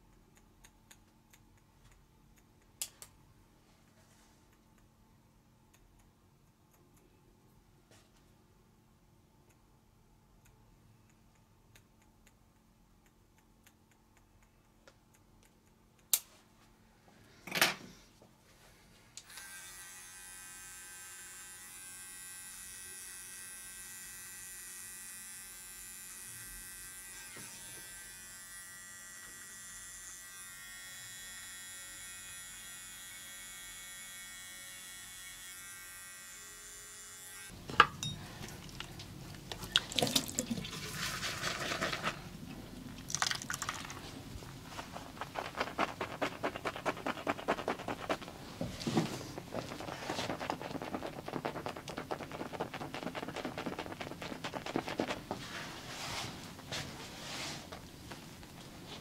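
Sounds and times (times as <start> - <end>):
electric clippers humming: 19.2 - 37.6.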